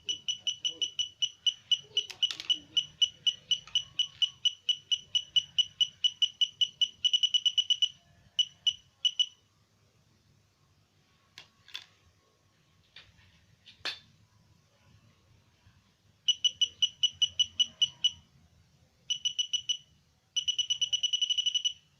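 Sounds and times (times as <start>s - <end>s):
metal detector beeping: 0.0s - 9.4s, 16.3s - 18.2s, 19.1s - 19.8s, 20.4s - 21.9s.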